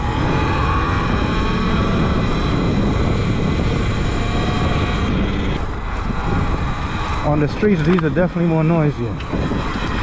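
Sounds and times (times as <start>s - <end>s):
electric motor whine: 0.0s - 10.0s
tire humming on road: 0.0s - 10.0s
wind buffeting microphone: 0.0s - 10.0s.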